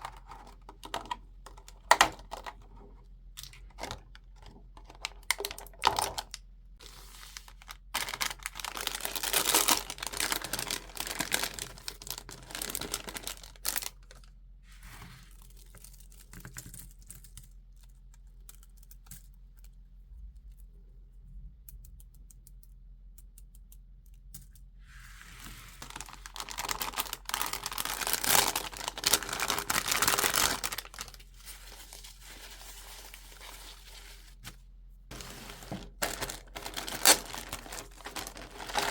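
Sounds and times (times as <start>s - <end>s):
toy packaging crinkling and tearing: 3.4s - 6.4s, 7.0s - 14.3s, 25.8s - 34.3s, 35.1s - 38.9s
small clicks and taps: 21.6s - 24.7s.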